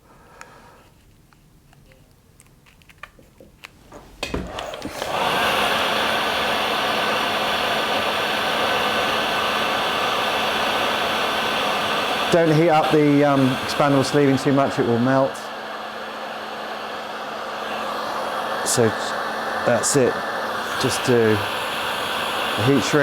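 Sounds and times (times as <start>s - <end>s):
handling clicks: 1.2s - 3.8s
heat gun blowing: 4.2s - 23.0s.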